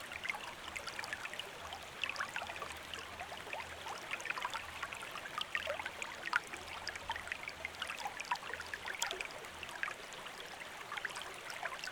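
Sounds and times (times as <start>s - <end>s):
shallow stream trickling: 0.0s - 11.9s.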